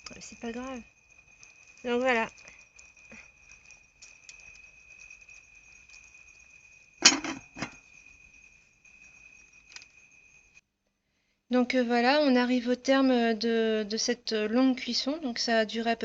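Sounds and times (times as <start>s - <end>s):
insects trilling: 0.0s - 10.6s.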